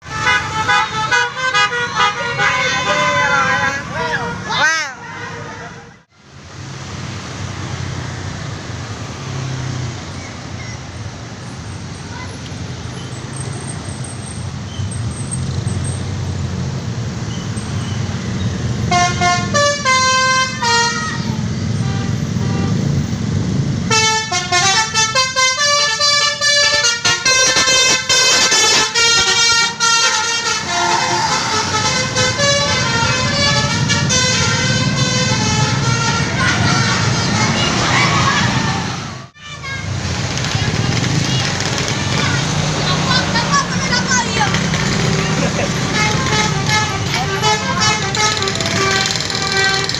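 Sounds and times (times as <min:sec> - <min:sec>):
multi-tone musical horn: 0:00.0 - 0:04.4, 0:18.9 - 0:22.9, 0:23.9 - 0:37.9, 0:45.9 - 0:49.9
vehicle engine rumbling: 0:00.0 - 0:49.9.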